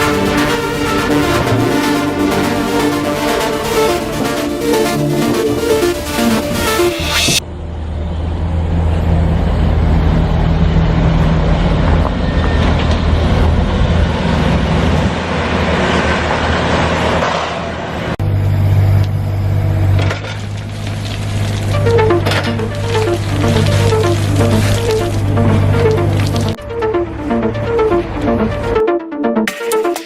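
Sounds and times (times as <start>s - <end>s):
steady engine hum: 0.0s - 12.4s, 18.2s - 29.4s
large engine humming: 0.0s - 15.1s, 18.2s - 29.4s.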